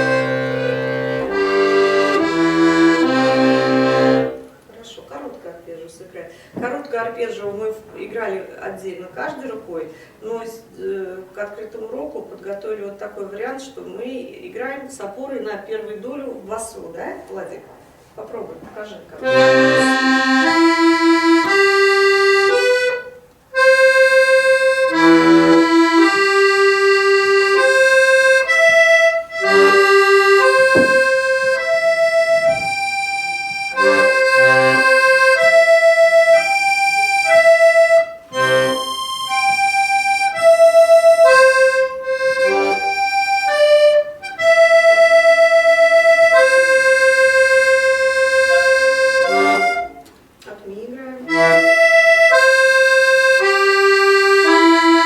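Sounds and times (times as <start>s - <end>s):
accordion arpeggios: 0.0s - 4.6s, 19.2s - 50.0s, 51.2s - 55.0s.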